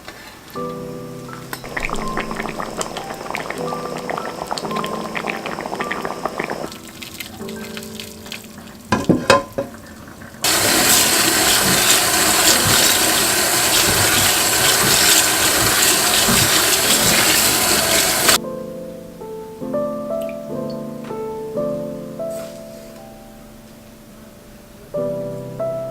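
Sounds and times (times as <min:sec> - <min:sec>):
background music: 0:00.6 - 0:09.4, 0:10.4 - 0:14.6
water rushing into a sink: 0:01.6 - 0:07.5, 0:10.2 - 0:18.4.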